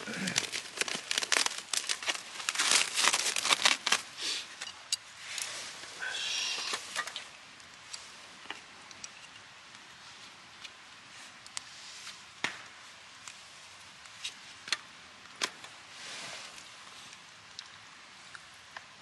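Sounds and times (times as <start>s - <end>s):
crinkling and rustling: 0.0s - 5.9s.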